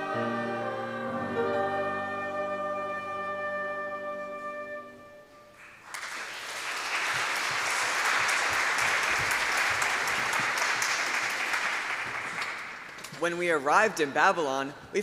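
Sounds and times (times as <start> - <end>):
choir singing with accompaniment: 0.0 - 5.5
audience applause: 5.8 - 13.0.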